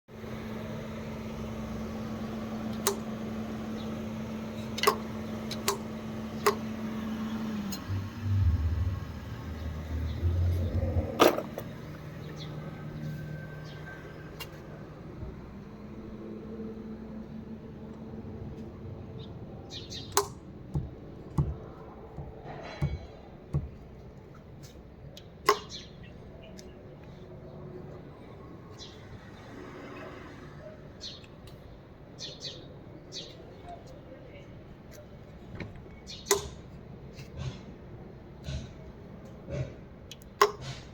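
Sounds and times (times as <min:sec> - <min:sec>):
steady low hum: 0:00.1 - 0:29.2
low rumble: 0:07.9 - 0:11.9.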